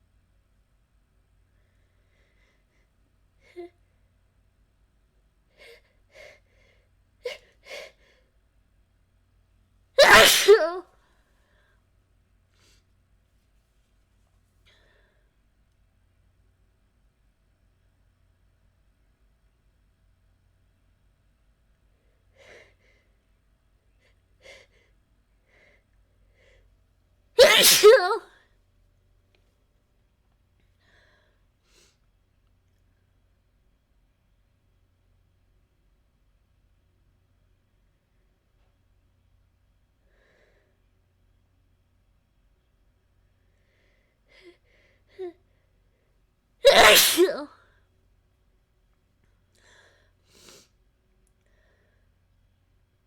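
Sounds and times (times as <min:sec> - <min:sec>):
girl sneezing: 0:10.0 - 0:10.8, 0:27.4 - 0:28.3, 0:46.6 - 0:47.6
faint short breaths: 0:49.6 - 0:50.8, 0:51.4 - 0:52.2.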